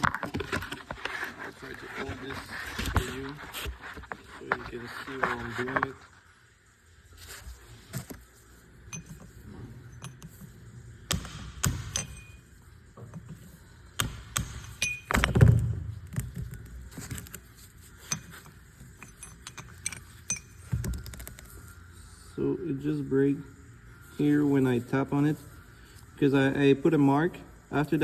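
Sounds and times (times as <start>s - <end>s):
tools clinking on metal: 8.9s - 10.6s, 11.7s - 13.4s, 14.4s - 15.6s, 18.0s - 21.0s.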